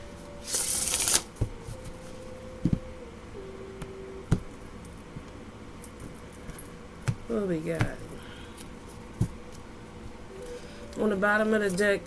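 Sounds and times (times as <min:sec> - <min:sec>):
cards clicking and tapping: 0:00.4 - 0:02.0
cards being shuffled: 0:00.4 - 0:02.1.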